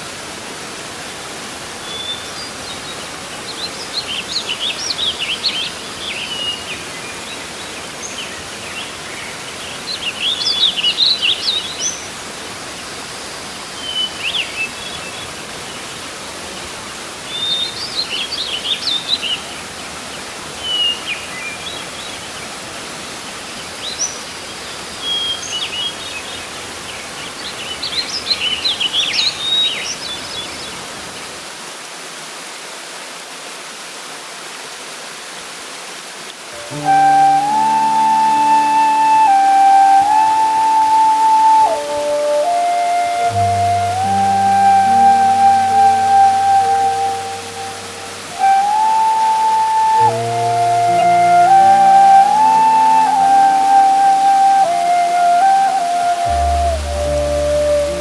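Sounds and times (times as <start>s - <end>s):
waterfall rushing: 0.0s - 58.0s
songbird chirping: 36.6s - 58.0s.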